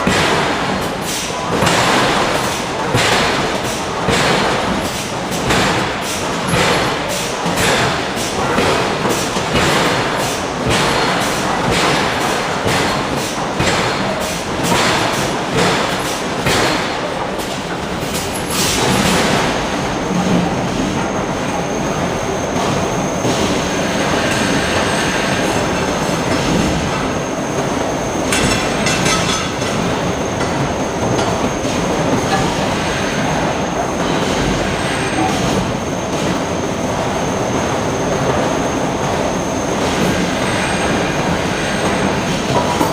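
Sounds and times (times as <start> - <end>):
forge machinery noise: 0.0 - 42.9
forging hammer striking steel: 28.3 - 30.6.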